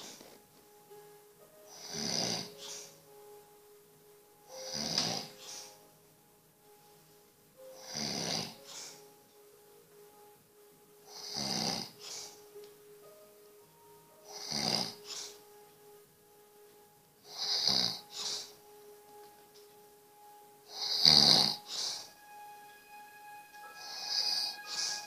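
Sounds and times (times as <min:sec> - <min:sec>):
loud rasping snoring: 0:01.8 - 0:02.9, 0:04.6 - 0:05.7, 0:07.8 - 0:09.0, 0:11.1 - 0:12.4, 0:14.3 - 0:15.4, 0:17.3 - 0:18.5, 0:20.7 - 0:22.1.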